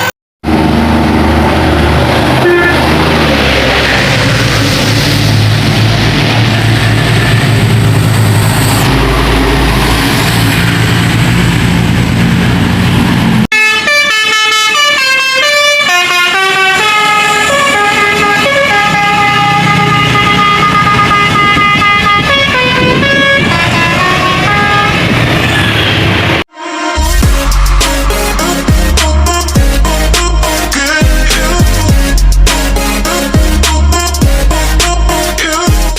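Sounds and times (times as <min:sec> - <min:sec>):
large vehicle engine: 0:00.0 - 0:14.0, 0:14.8 - 0:35.9
road noise: 0:00.0 - 0:35.9
multi-tone bus horn melody: 0:01.8 - 0:04.4, 0:13.5 - 0:35.9.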